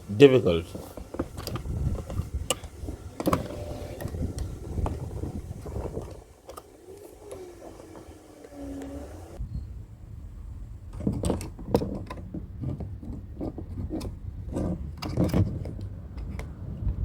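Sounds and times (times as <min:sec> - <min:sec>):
tool clicks knocks and scrapes: 0:00.7 - 0:09.4
low rumble: 0:16.5 - 0:17.0.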